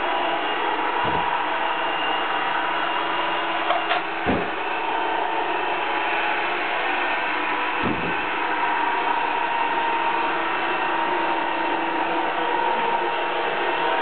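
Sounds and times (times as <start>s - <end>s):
low bump: 7.7s - 8.3s.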